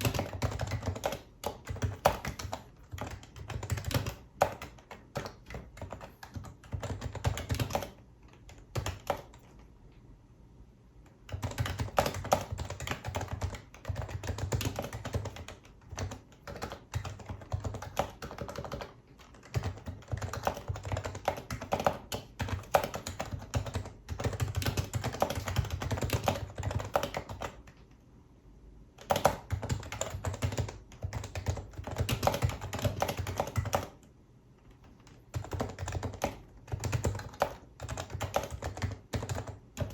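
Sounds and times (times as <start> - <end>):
fast typing on keyboard: 0.0 - 9.7, 11.1 - 27.9, 29.0 - 34.1, 34.8 - 39.9.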